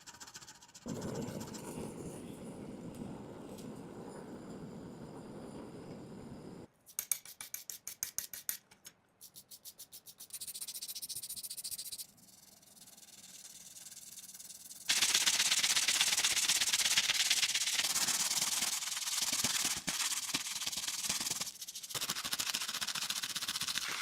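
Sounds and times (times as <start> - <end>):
hand tool rubbing on metal: 9.2 - 15.0.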